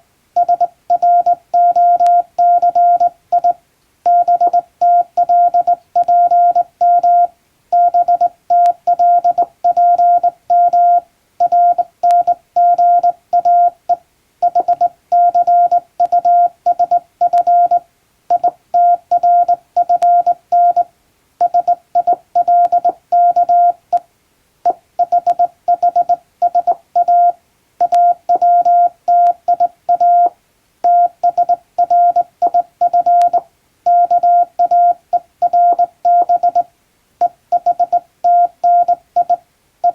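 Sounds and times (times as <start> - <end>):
morse code beeping tone: 0.4 - 13.8, 14.4 - 23.8, 24.7 - 39.9.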